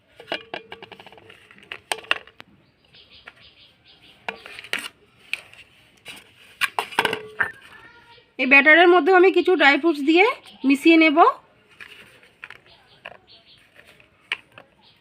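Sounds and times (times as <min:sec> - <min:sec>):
dry fruits clinking into bowl: 0:00.2 - 0:02.4, 0:06.8 - 0:07.8.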